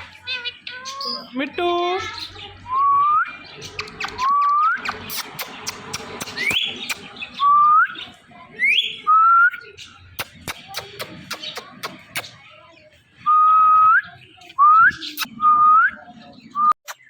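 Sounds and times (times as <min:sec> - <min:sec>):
parakeet sharp clicks: 0:03.7 - 0:07.2, 0:10.2 - 0:12.4.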